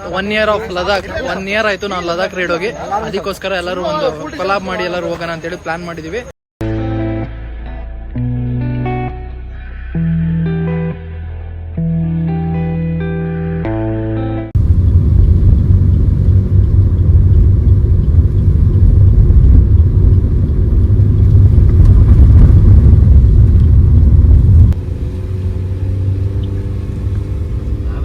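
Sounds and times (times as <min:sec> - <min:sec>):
wind buffeting microphone: 0:14.6 - 0:28.0.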